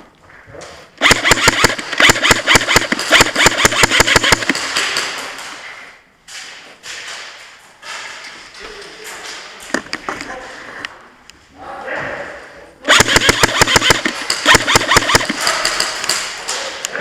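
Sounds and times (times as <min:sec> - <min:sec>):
airsoft gun rapid firing: 0:01.0 - 0:05.5, 0:12.9 - 0:16.4.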